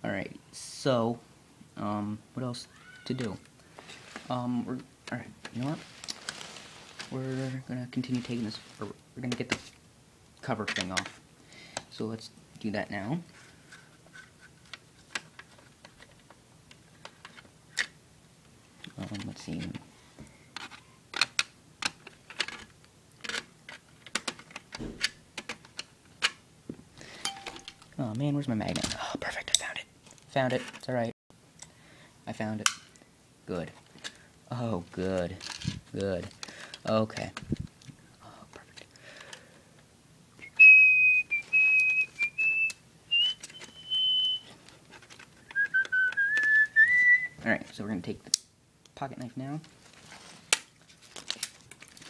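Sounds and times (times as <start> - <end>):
person whistling: 40.4 - 44.5, 45.5 - 47.4.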